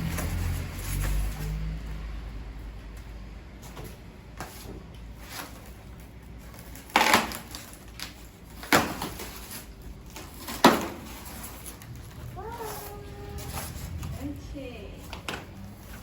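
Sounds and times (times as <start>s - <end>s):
packaging ripping: 6.4s - 12.9s.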